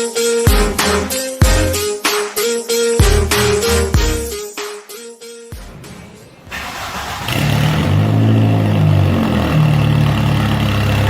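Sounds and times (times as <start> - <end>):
car engine starting and idling: 5.7 - 11.0.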